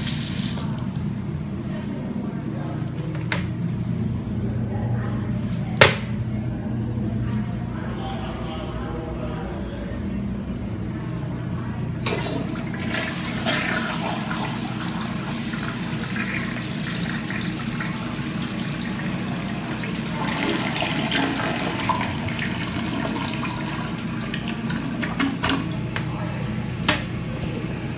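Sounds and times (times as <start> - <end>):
toilet flushing: 0.0 - 1.0, 12.0 - 27.9.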